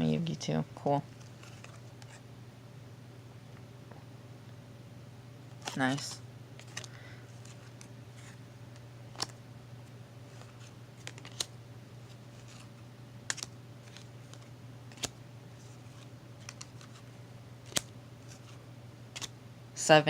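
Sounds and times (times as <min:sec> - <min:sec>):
trading cards snapping: 0:05.6 - 0:07.9, 0:08.7 - 0:09.4, 0:10.4 - 0:11.6, 0:12.4 - 0:15.2, 0:15.9 - 0:19.4.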